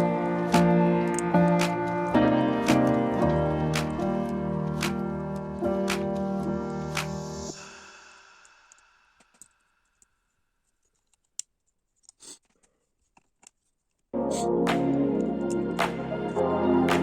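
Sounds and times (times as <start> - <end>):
background music: 0.0 - 7.8, 14.2 - 17.0.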